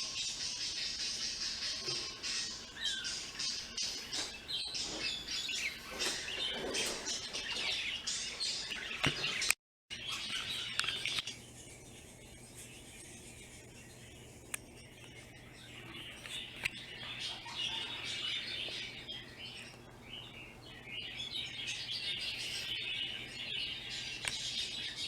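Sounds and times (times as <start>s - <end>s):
pet bird chirping: 0.0s - 25.0s
faint steady hum: 7.6s - 25.0s.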